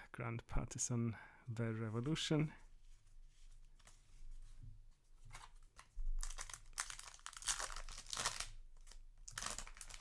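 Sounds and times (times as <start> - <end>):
foil wrapper crinkling: 6.2 - 10.0.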